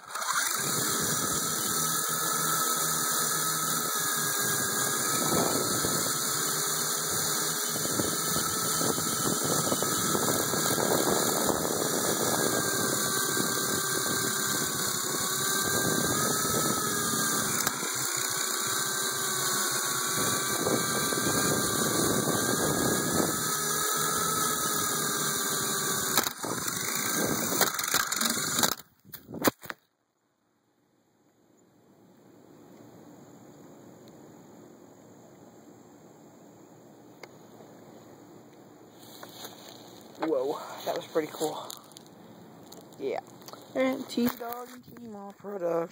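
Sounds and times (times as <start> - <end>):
rc helicopter motor whining: 0.0 - 29.0, 39.0 - 45.9.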